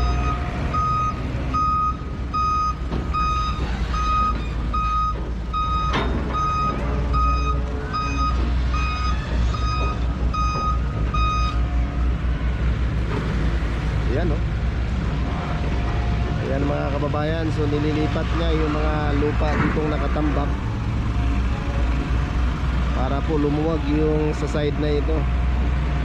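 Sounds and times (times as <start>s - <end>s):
excavator warning alarm beeping: 0.0s - 11.8s
diesel engine running: 0.0s - 26.0s.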